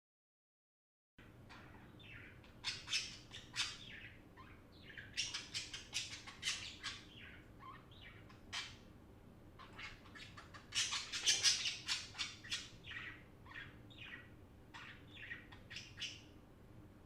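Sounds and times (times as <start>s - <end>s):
budgerigars chirping: 1.5s - 8.9s, 9.6s - 16.3s.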